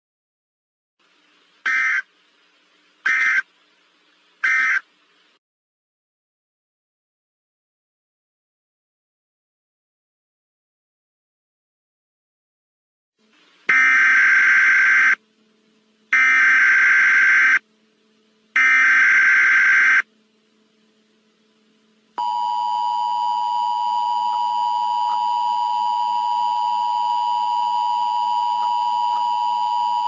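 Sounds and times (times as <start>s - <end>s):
harsh digital data bursts: 13.7s - 15.2s, 16.2s - 17.6s
two-tone attention signal: 22.2s - 30.0s.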